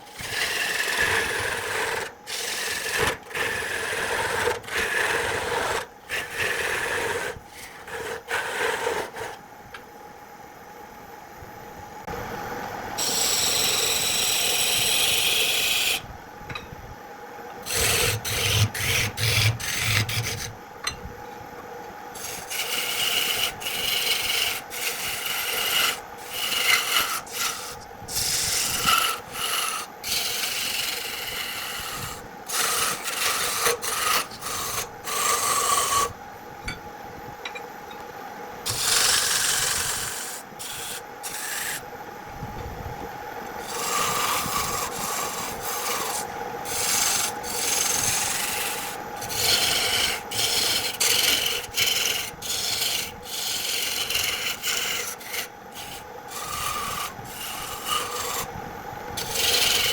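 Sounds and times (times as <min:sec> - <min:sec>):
wood being rubbed and rasped: 0:13.0 - 0:16.0, 0:17.7 - 0:20.5, 0:22.2 - 0:36.1, 0:38.7 - 0:41.8, 0:43.6 - 0:58.5, 0:59.2 - 0:59.9.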